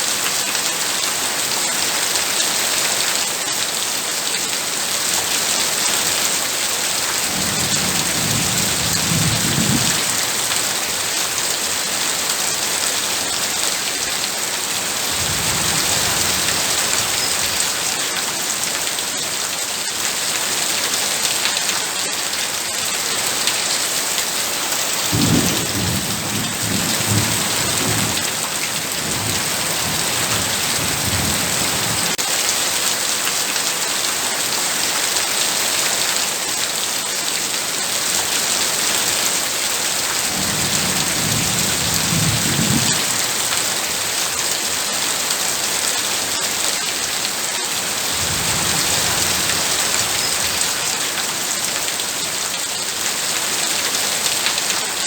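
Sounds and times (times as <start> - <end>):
heavy rain hissing: 4.6 - 32.8, 37.7 - 54.9
low thunder rumbling: 7.4 - 10.3, 25.1 - 32.2, 40.4 - 43.3.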